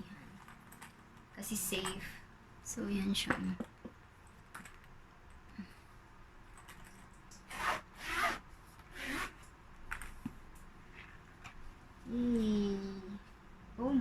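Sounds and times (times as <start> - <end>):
carrying case rasping: 7.5 - 9.4.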